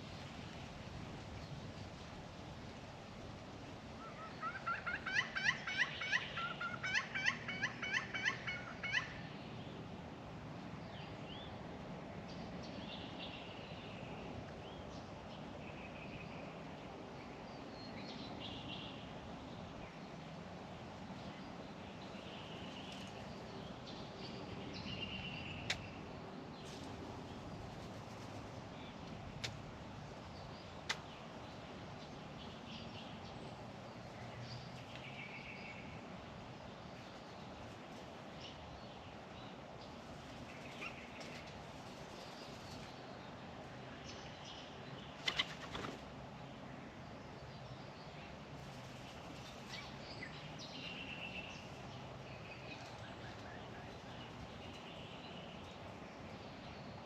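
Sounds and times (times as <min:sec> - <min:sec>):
steady outdoor noise: 0:00.0 - 0:57.0
birds calling: 0:04.0 - 0:09.6, 0:44.0 - 0:46.1.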